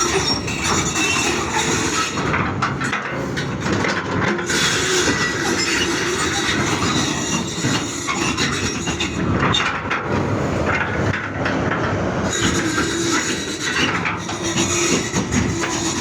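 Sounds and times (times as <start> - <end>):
metallic clattering and scraping: 0.0 - 16.0.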